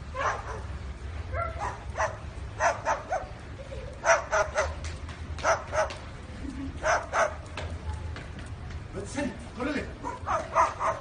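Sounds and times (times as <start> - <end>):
cockatoo mimicking dog barks: 10.0 - 11.0.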